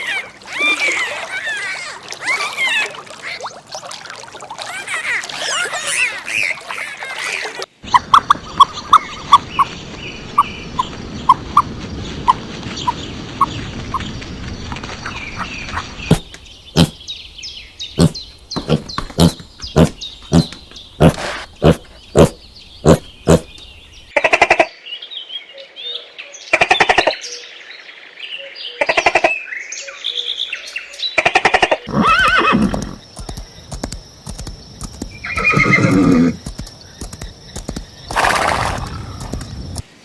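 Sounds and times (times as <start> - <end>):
horse whinnying: 31.9 - 33.0, 35.2 - 36.4.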